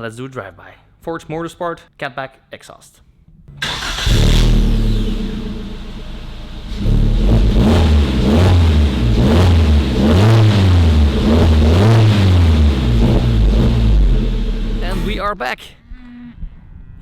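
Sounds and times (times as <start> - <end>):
car engine revving: 3.6 - 15.2.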